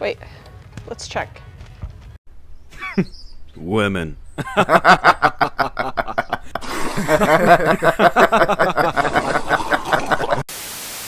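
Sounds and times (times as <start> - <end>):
person laughing: 2.7 - 3.1, 4.4 - 10.4.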